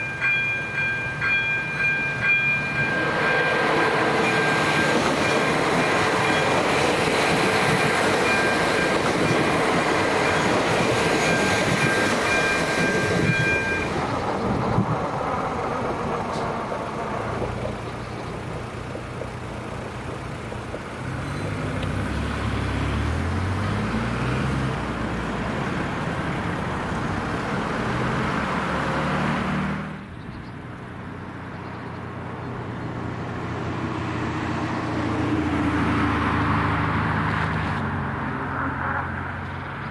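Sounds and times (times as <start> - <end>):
train passing with squealing: 0.0 - 28.2
road vehicles pulling away: 0.0 - 39.9.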